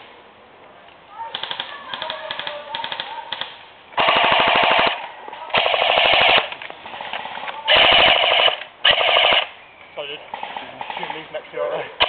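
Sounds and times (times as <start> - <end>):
airsoft gun firing bursts: 1.3 - 6.5, 7.7 - 9.5.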